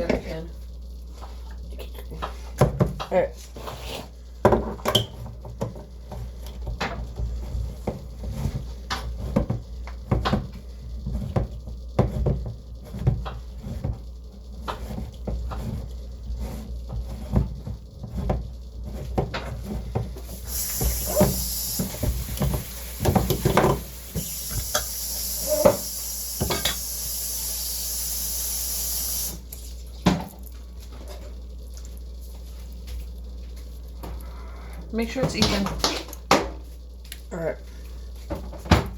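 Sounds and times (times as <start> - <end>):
water tap running: 20.2 - 29.6.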